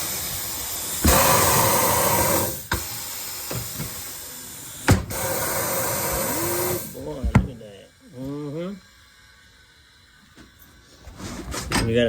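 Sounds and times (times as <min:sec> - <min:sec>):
air hiss: 0:00.0 - 0:07.4.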